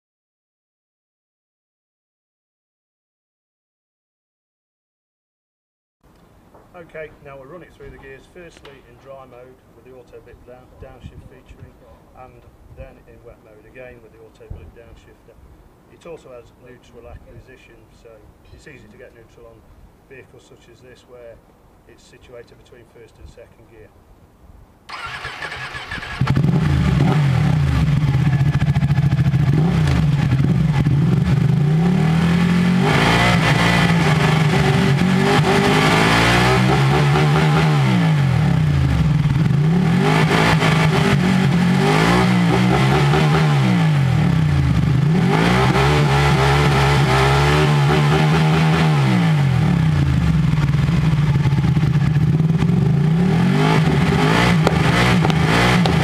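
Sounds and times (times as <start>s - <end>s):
motorcycle engine revving: 24.9s - 56.0s.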